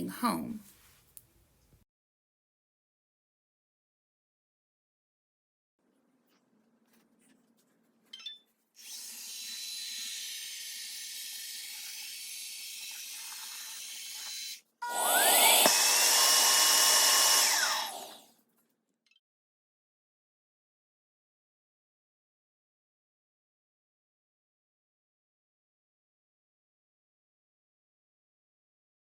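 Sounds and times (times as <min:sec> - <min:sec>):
robot vacuum running: 0:08.8 - 0:18.2
suction motor whine: 0:08.8 - 0:18.2.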